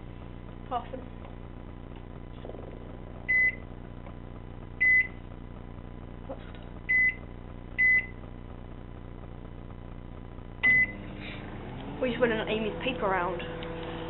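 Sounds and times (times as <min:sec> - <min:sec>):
microwave keypad beeps: 0:03.3 - 0:03.6, 0:04.8 - 0:05.2, 0:06.9 - 0:07.2, 0:07.8 - 0:08.2, 0:10.6 - 0:11.0.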